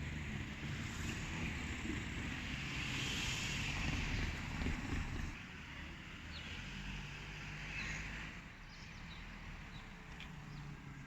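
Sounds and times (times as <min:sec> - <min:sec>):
vehicle engines idling: 0:00.0 - 0:05.4
road traffic rumble: 0:00.0 - 0:11.0.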